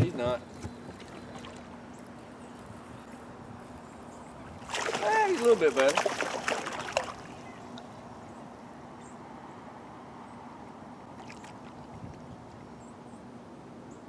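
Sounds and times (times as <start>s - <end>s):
flowing river water: 0.8s - 8.8s, 10.6s - 13.1s.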